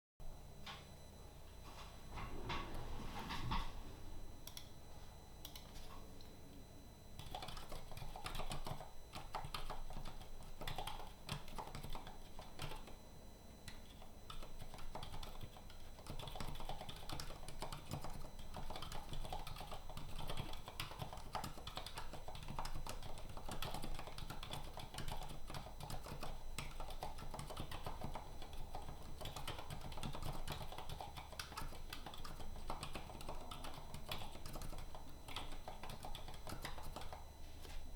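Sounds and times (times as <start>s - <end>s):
soft mechanical keyboard typing: 4.4s - 4.7s, 5.4s - 6.0s, 7.2s - 13.0s, 13.6s - 37.3s.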